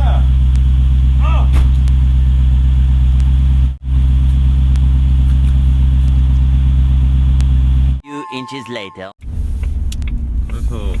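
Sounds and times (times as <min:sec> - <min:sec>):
car engine droning: 0:00.0 - 0:08.0.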